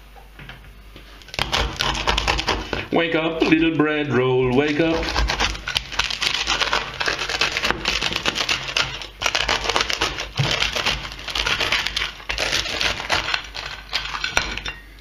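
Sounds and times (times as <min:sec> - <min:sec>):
bread crust crackling: 0:01.1 - 0:03.6, 0:04.5 - 0:14.7.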